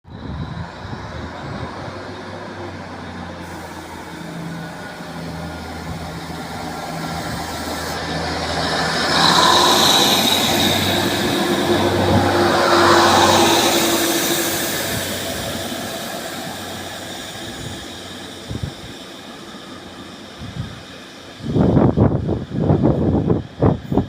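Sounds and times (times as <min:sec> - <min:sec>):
diesel train engines pulling away: 0:00.1 - 0:24.0
high-pitched whine: 0:03.4 - 0:22.8.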